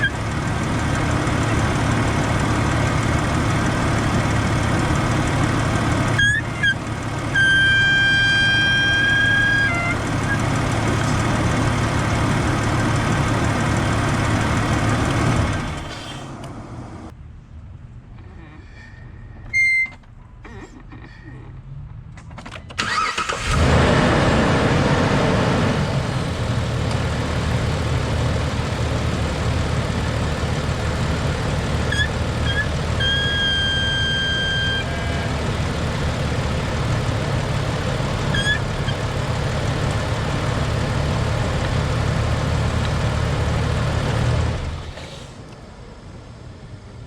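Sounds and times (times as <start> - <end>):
car engine starting and idling: 0.0 - 17.2, 20.1 - 46.4
high vacuum whistle: 6.2 - 10.4, 31.9 - 35.4.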